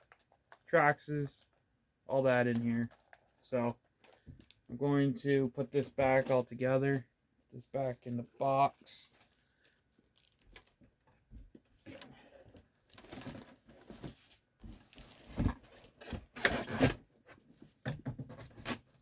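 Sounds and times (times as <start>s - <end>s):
packaging rustling and crinkling: 0.0s - 0.7s, 2.4s - 4.7s, 8.2s - 16.2s.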